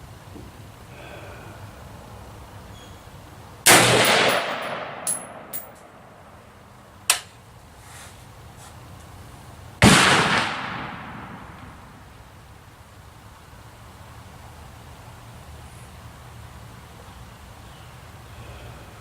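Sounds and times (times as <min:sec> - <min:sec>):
rifle shots echoing: 0:03.7 - 0:06.3, 0:09.8 - 0:12.1
sharp clicks: 0:07.1 - 0:07.4.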